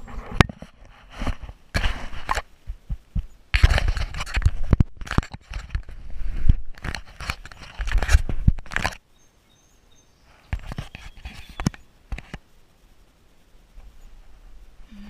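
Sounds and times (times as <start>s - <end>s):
scrapes: 0.0s - 2.5s, 3.5s - 9.0s, 10.2s - 12.4s
crinkling rustles: 0.0s - 9.0s, 10.3s - 12.6s.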